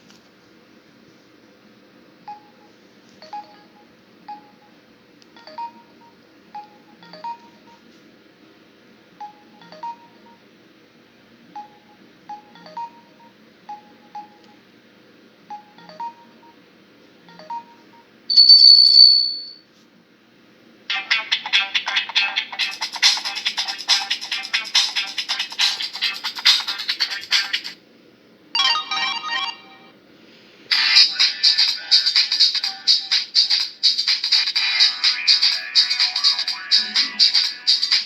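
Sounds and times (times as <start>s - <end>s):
phone keypad beeps with clicks: 2.3s - 4.8s, 5.4s - 7.8s, 9.2s - 10.4s, 11.6s - 14.6s, 15.5s - 16.6s, 17.3s - 18.5s
high-pitched ringtone note: 17.4s - 19.6s, 28.6s - 30.0s.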